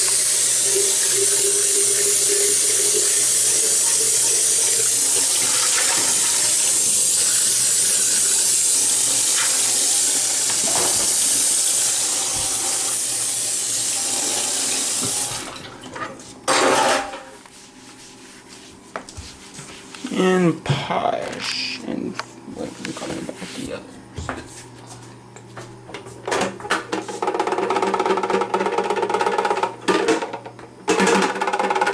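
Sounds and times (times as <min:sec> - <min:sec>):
tap water running into sink: 0:00.0 - 0:15.7.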